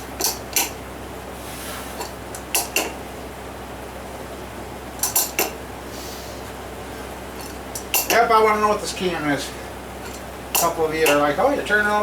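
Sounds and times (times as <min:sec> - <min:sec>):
metal tools clinking: 0:07.4 - 0:08.3, 0:10.0 - 0:11.2.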